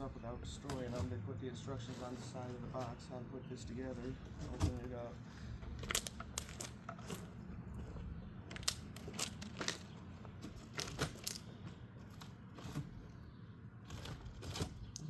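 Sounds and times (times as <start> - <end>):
cardboard box crackling: 5.7 - 15.0.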